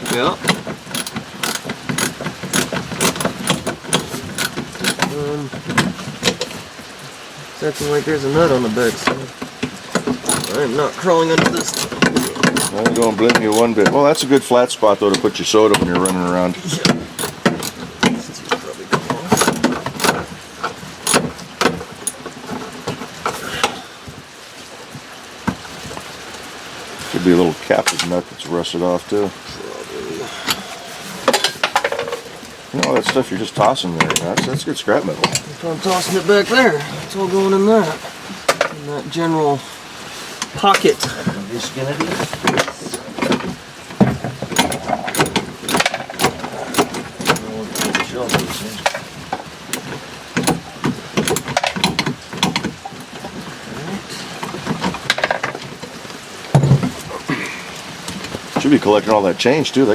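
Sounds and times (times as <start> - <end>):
metal hand tools clinking and knocking: 0.0 - 6.6, 9.0 - 14.5, 15.1 - 22.9, 44.1 - 49.0, 49.8 - 50.6, 51.2 - 52.7.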